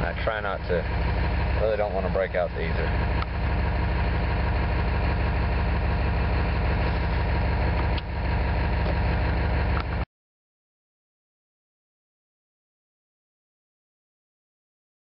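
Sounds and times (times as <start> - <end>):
diesel engine idling: 0.0 - 10.0.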